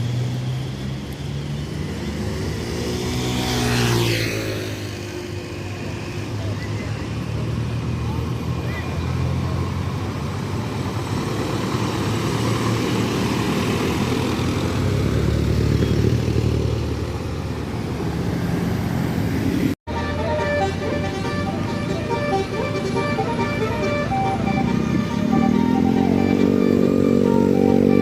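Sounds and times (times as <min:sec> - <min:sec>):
traffic: 0:00.0 - 0:28.0
bus engine rumble: 0:04.8 - 0:28.0
tune of short pitched notes: 0:19.9 - 0:28.0.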